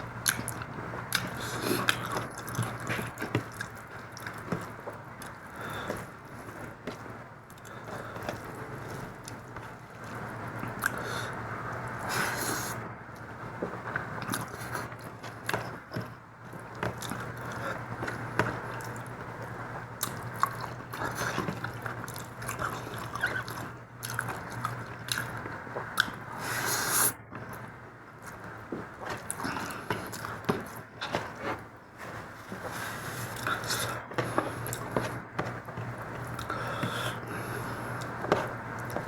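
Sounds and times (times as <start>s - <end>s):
chewing and biting food: 0.2s - 11.0s, 14.2s - 26.2s, 32.5s - 39.0s.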